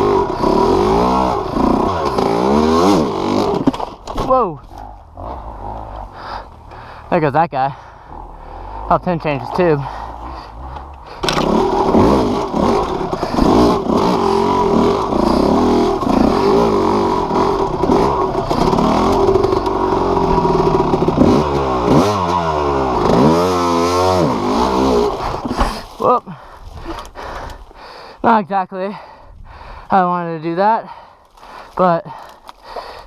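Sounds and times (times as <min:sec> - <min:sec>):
dirt bike engine revving: 0:00.0 - 0:26.1.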